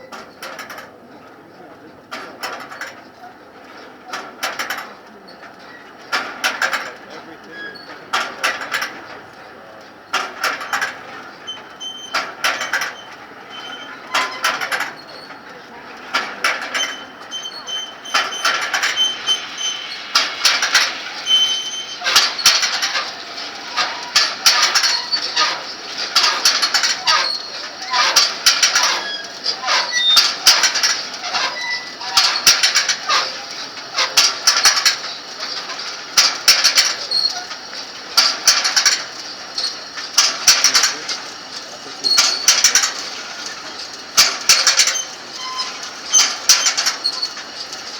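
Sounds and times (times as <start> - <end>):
metal linkages clanking and rattling: 3.6 - 47.9
metal squeaking: 5.3 - 9.2, 10.2 - 47.9
metal parts scraping: 16.0 - 47.9.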